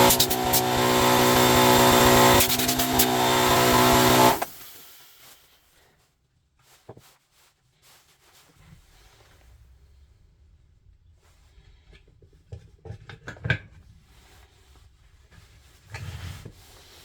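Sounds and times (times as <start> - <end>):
angle grinder motor whining: 0.0 - 5.2.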